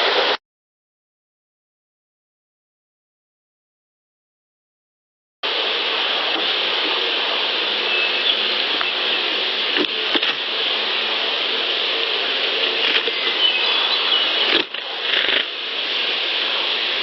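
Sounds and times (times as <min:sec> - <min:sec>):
steady hiss: 0:00.0 - 0:00.4, 0:05.4 - 0:17.0.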